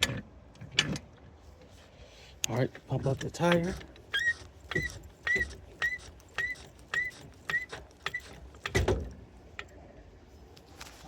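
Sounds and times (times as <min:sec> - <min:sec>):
car jack clicking and squeaking: 0:03.0 - 0:09.8.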